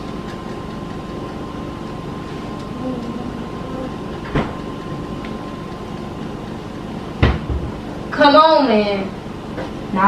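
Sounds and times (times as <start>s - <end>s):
background hum: 0.0s - 10.0s.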